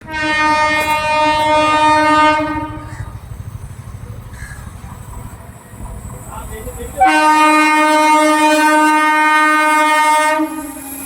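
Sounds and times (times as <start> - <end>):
locomotive horn blast: 0.0 - 3.1, 7.0 - 10.8
train rumbling: 0.0 - 11.0.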